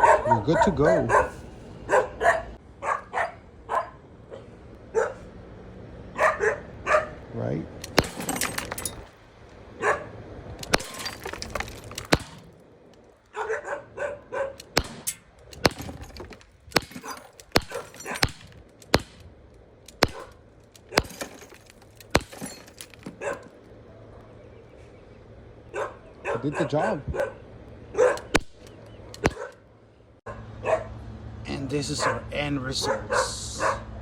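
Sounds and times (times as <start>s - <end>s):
dog barking: 0.0s - 5.3s, 6.1s - 7.2s, 9.8s - 10.2s, 13.3s - 14.6s, 17.0s - 18.2s, 20.1s - 20.4s, 23.1s - 24.3s, 25.7s - 28.3s, 29.2s - 29.6s, 30.3s - 31.0s, 31.9s - 34.0s
air pistol shots: 7.8s - 8.4s, 14.6s - 19.3s, 19.9s - 21.3s
glass breaking: 7.8s - 9.2s, 10.6s - 12.6s, 14.6s - 19.2s, 20.0s - 23.4s.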